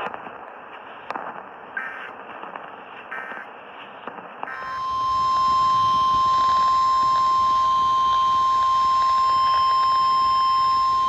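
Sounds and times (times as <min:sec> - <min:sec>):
radio static hiss: 0:01.8 - 0:02.1
steady alarm tone: 0:04.5 - 0:11.0.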